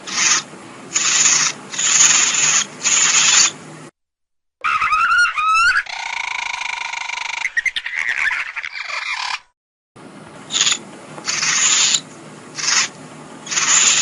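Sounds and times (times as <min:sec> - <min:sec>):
shrill wavering creature call: 0:04.6 - 0:09.4.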